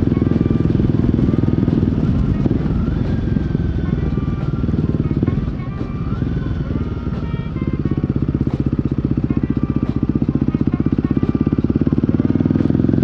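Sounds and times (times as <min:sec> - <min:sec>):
motorcycle engine running: 0:00.0 - 0:13.0.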